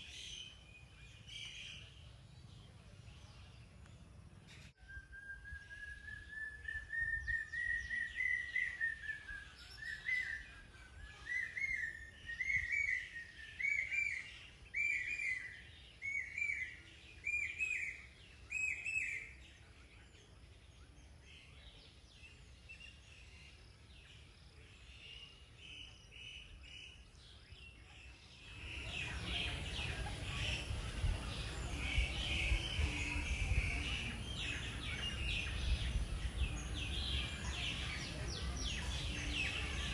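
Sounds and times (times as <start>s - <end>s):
birds chirping: 0.0s - 4.8s, 5.5s - 39.9s
outdoor background noise: 0.0s - 39.9s
bird whistling call: 4.8s - 19.3s.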